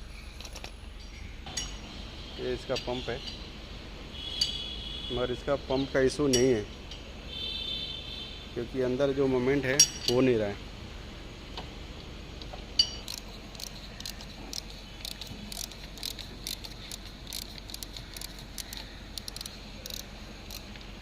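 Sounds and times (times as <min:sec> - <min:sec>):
metallic clicks and clinks: 0:12.8 - 0:20.7.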